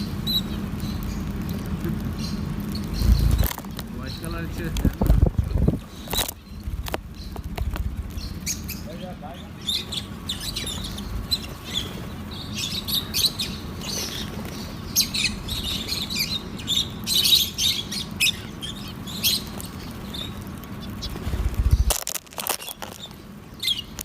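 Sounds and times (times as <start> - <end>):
lovebirds chirping: 0.0 - 24.0
low rumble: 1.5 - 8.8.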